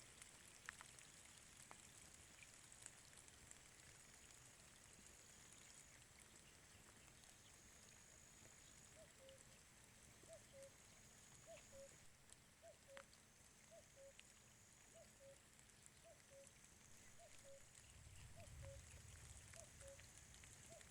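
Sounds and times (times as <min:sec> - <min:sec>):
light rain pattering and dripping: 0:00.0 - 0:20.9
cuckoo calling: 0:08.9 - 0:09.6, 0:10.2 - 0:10.8, 0:11.4 - 0:13.1, 0:13.7 - 0:14.2, 0:14.9 - 0:15.4, 0:16.0 - 0:20.0, 0:20.7 - 0:20.9.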